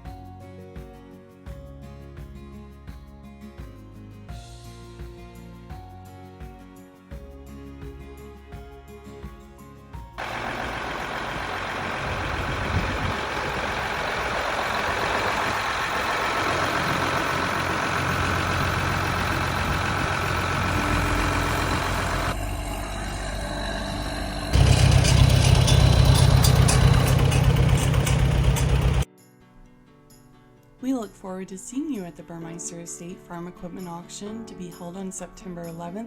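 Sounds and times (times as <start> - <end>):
engine deep low hum: 10.2 - 29.1
heavy machinery engines running: 10.2 - 29.1.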